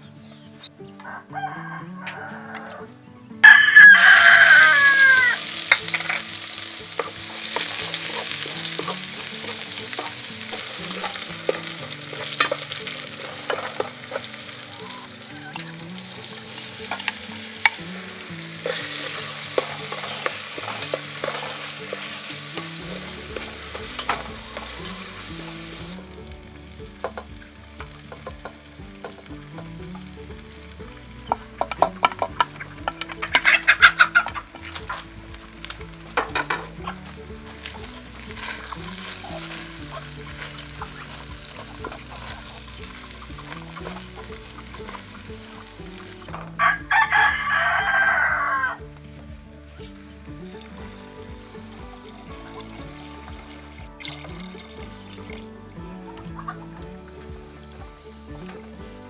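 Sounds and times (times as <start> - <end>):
rooster crowing: 1.0 - 5.9, 14.6 - 17.4, 46.5 - 48.9
food sizzling in hot oil: 3.4 - 59.0.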